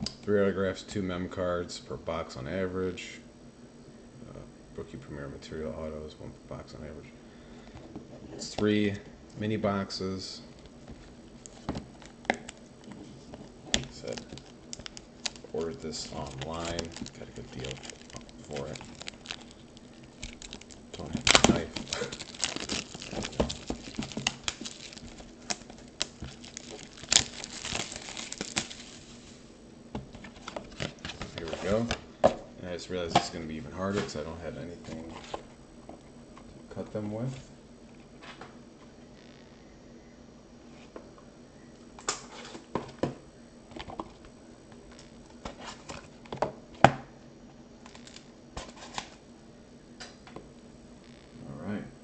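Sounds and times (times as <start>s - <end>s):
plastic wrapping crinkling: 10.5s - 29.4s, 47.8s - 49.2s
packaging being torn open: 13.8s - 29.0s, 47.9s - 49.1s.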